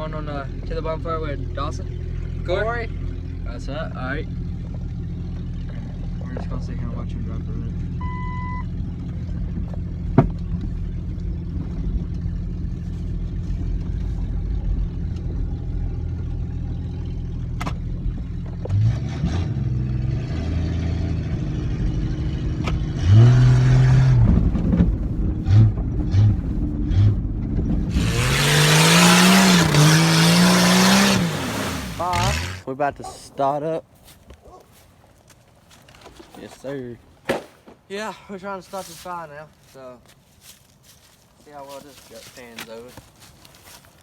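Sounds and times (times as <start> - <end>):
car engine revving: 0.0 - 32.7.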